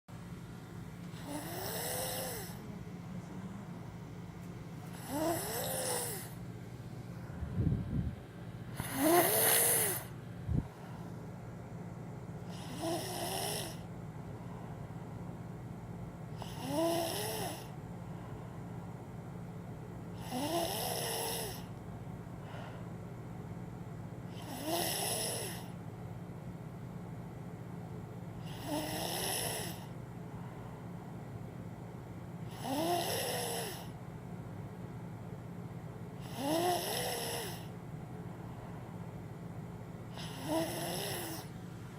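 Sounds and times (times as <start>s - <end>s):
steady low hum: 0.1s - 41.9s
child snoring loudly: 1.2s - 2.6s, 4.9s - 6.4s, 8.8s - 10.1s, 12.5s - 13.8s, 16.4s - 17.7s, 20.2s - 21.7s, 24.4s - 25.7s, 28.4s - 29.9s, 32.5s - 33.9s, 36.2s - 37.7s, 40.2s - 41.5s
faint breath: 8.7s - 11.3s, 14.3s - 15.1s, 18.0s - 18.9s, 22.4s - 23.0s, 29.8s - 31.0s, 38.3s - 39.1s.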